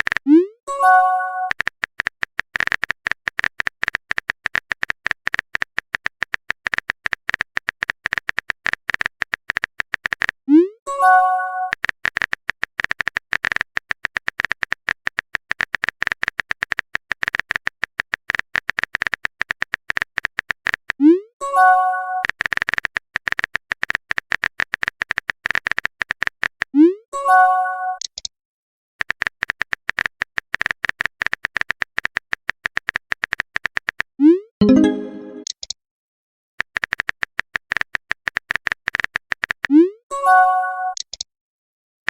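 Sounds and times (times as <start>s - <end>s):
phone keyboard typing clicks: 1.5s - 10.4s, 29.0s - 35.8s, 36.6s - 39.7s, 40.9s - 41.3s.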